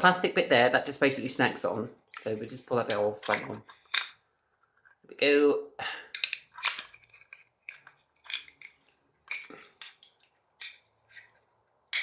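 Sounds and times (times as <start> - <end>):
plastic and metal clicks and scrapes: 2.1 - 5.0, 6.1 - 12.0.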